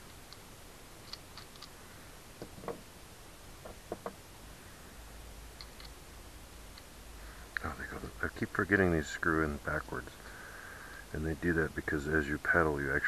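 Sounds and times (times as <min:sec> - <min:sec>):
small metal parts clicking: 0:01.0 - 0:01.8.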